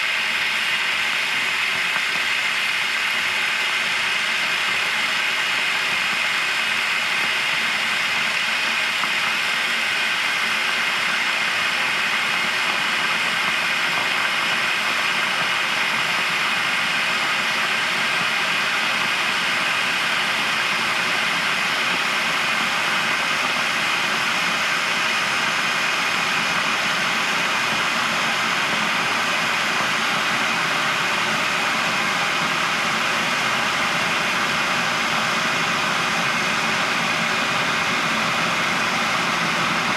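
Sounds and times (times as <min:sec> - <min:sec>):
kettle boiling: 0:00.0 - 0:39.9.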